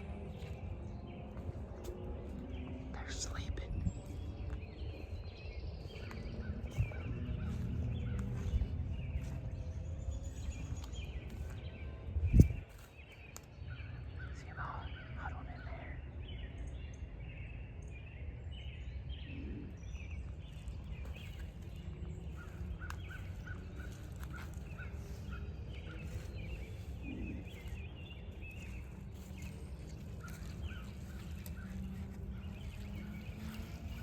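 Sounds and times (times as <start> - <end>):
low outdoor rumble: 0.0 - 34.0
small birds chirping: 0.0 - 34.0.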